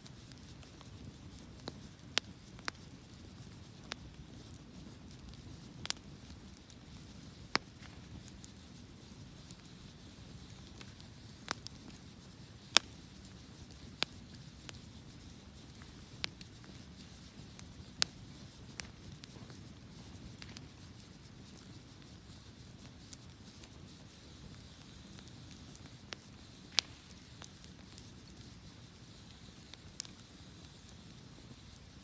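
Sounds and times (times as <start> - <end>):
wood fire crackling: 0.0 - 32.0.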